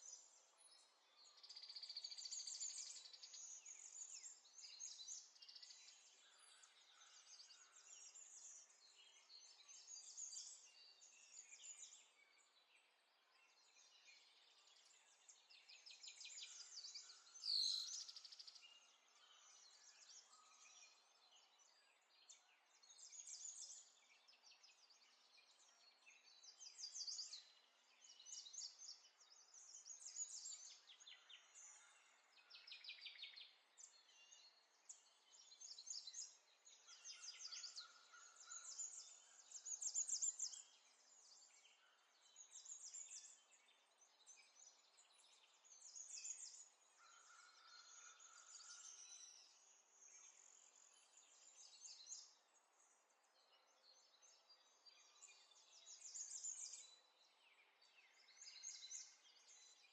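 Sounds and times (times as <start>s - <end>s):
small birds chirping and trilling: 0.0s - 59.9s.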